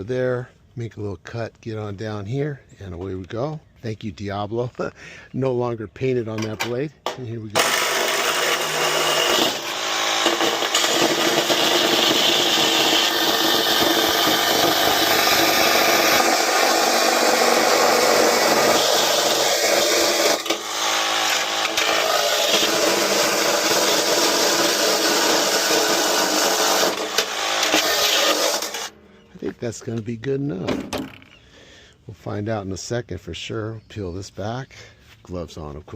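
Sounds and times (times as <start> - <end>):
power saw cutting metal: 7.1 - 29.0.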